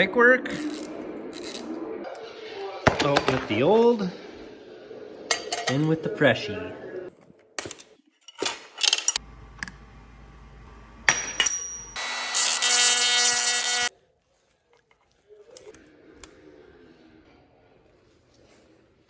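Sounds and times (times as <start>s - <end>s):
power tool motor whining: 12.0s - 13.9s.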